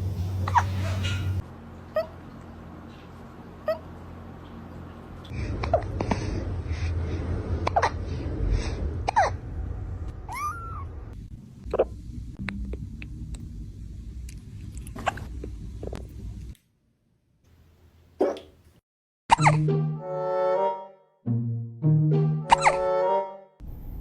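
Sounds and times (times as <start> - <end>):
cat squeaky call: 10.3 - 10.9.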